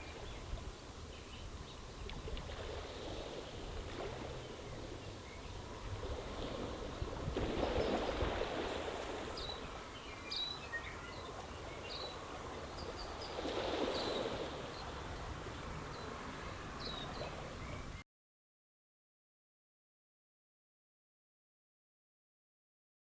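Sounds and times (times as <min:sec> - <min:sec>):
waves washing over stony beach: 0:02.4 - 0:10.3, 0:11.3 - 0:18.0
birds chirping: 0:04.2 - 0:06.8, 0:07.6 - 0:18.0.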